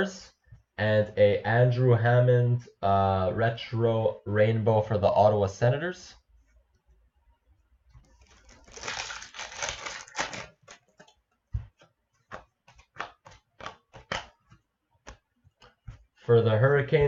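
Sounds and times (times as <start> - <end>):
wrapper rustling: 8.0 - 10.9.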